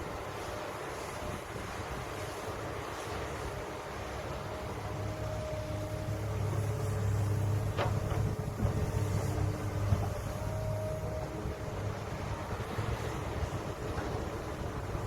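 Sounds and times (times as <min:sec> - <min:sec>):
heavy diesel machine running: 0:04.3 - 0:15.0.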